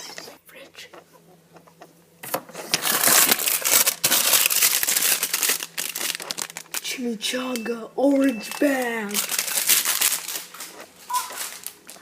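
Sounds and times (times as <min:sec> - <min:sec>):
plastic wrapper crinkling: 0:02.3 - 0:07.0, 0:08.4 - 0:12.0.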